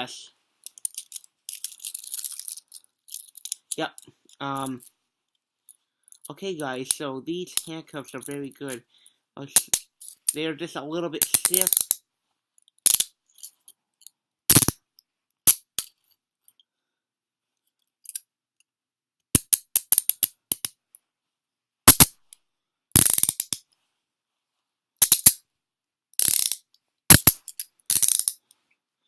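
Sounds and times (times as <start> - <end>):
handcuffs ratcheting clicks: 19.4 - 20.8, 23.0 - 23.6, 26.2 - 28.5.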